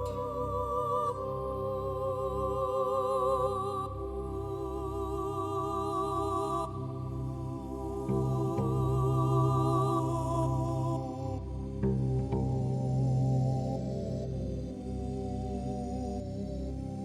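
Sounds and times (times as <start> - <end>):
slow background music: 0.0 - 17.0
wordless humming voice: 0.0 - 17.0
low sustained bass: 6.8 - 17.0.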